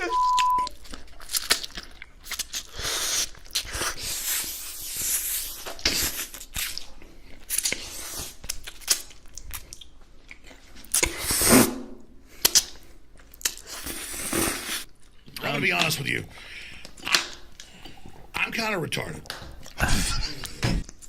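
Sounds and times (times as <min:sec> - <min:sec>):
crunchy bites and chewing: 0:00.4 - 0:04.3.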